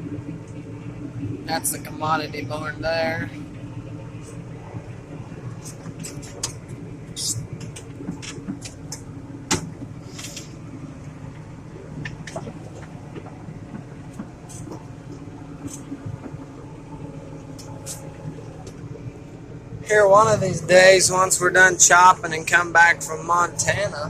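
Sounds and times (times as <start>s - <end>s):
tractor engine running: 0.0s - 24.0s
sharp clicks and rattles: 0.1s - 19.1s.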